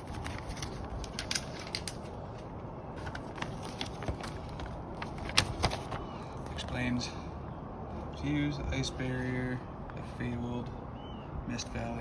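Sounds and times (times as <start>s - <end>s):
packaging crinkling and rustling: 0.0s - 6.1s.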